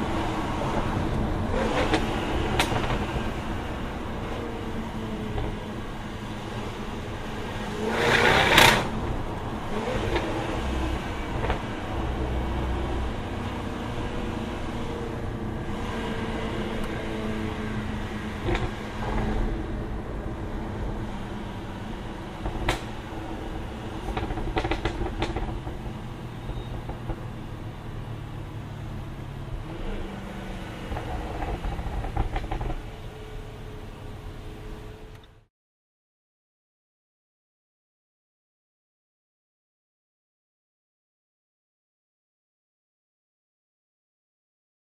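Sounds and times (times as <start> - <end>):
car engine running: 0.0 - 35.3
exhaust pops: 22.4 - 23.2, 23.9 - 27.5, 30.8 - 33.0.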